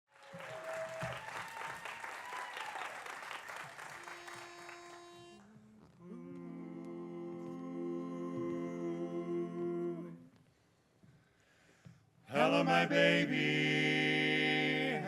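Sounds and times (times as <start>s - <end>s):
audience applauding: 0.1s - 5.3s.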